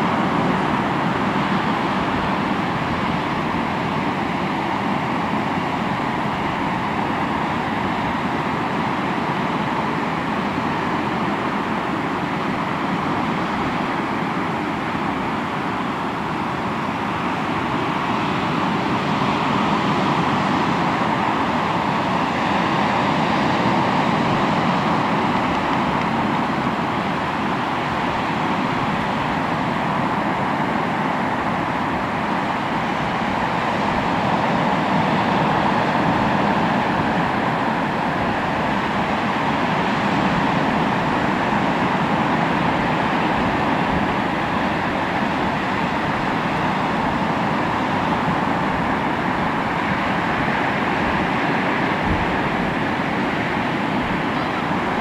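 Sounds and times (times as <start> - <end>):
sea waves breaking on shore: 0.0 - 55.0.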